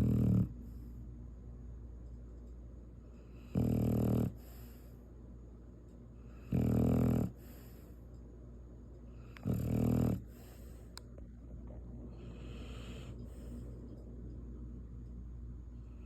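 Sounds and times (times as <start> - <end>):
dog snoring: 0.0 - 0.8, 3.1 - 4.9, 6.2 - 7.9, 9.1 - 10.7
dog breathing softly: 12.0 - 14.0.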